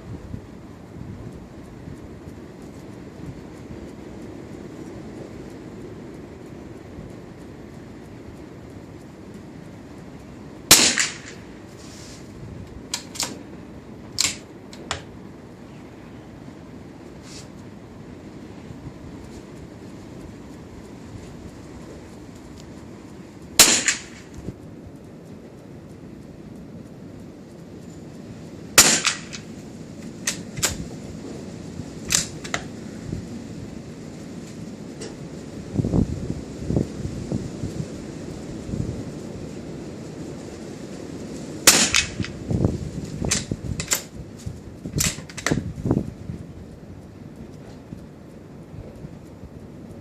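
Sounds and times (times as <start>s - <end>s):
wind noise: 0.0s - 50.0s
rifle shot: 10.7s - 11.4s, 23.6s - 24.3s, 28.8s - 29.4s, 41.6s - 42.3s
rifle bolt clicks: 12.9s - 13.4s, 14.2s - 15.0s, 30.2s - 30.8s.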